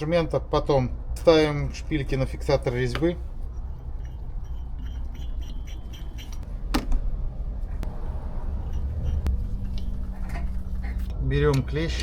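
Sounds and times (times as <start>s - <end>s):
low rumble: 6.4s - 11.3s.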